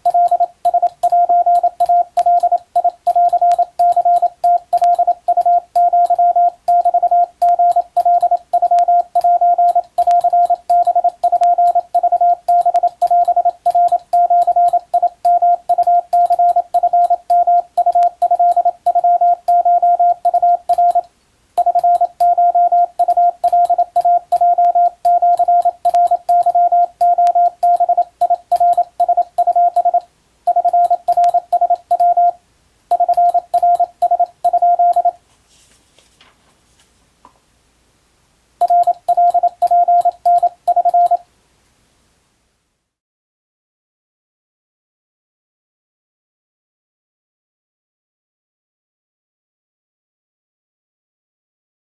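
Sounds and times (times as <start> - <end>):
morse code tone: 0.0 - 35.2, 38.6 - 41.2.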